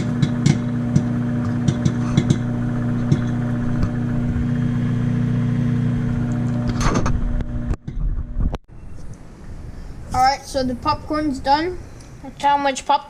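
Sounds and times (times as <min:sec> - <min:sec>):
popcorn popping: 0:00.0 - 0:04.0
microwave oven humming: 0:00.0 - 0:09.7.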